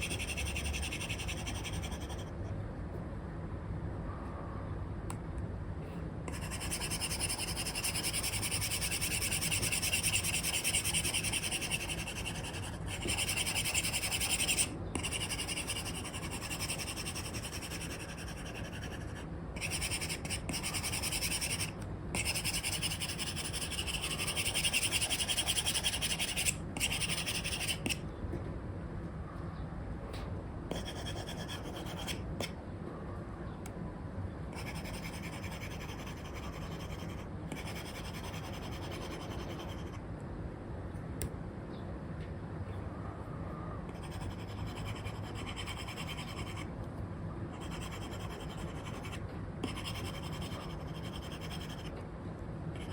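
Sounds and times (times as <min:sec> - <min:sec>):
stylus scratching on screen film: 0:00.0 - 0:02.4, 0:06.3 - 0:28.0, 0:30.7 - 0:32.5, 0:34.6 - 0:40.0, 0:43.9 - 0:46.7, 0:47.6 - 0:52.0.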